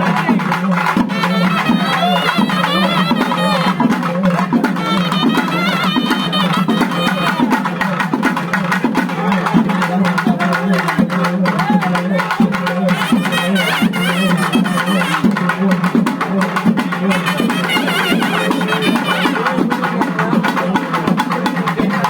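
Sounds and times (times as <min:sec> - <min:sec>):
fast dense drumming: 0:00.0 - 0:22.0
wavering high melody: 0:01.2 - 0:04.0, 0:04.6 - 0:07.7.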